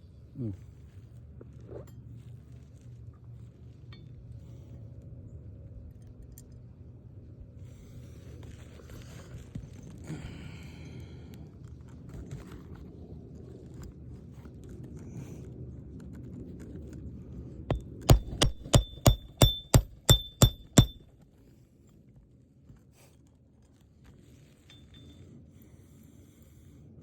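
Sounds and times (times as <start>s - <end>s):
hammer striking roofing nail: 17.7s - 21.0s.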